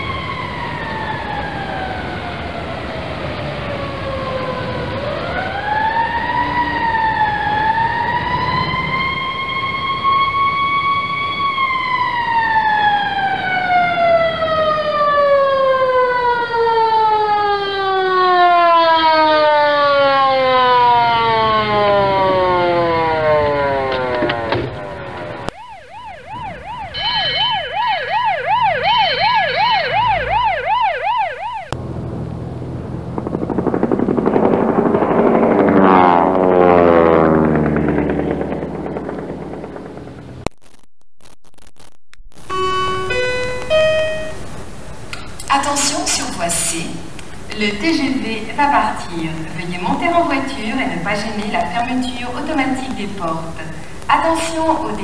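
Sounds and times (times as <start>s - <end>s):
ambulance siren warbling: 0.0s - 33.6s, 34.4s - 40.2s, 42.5s - 47.0s
fire engine siren wail: 0.0s - 40.3s
jet flying over: 19.1s - 25.6s, 31.7s - 40.5s.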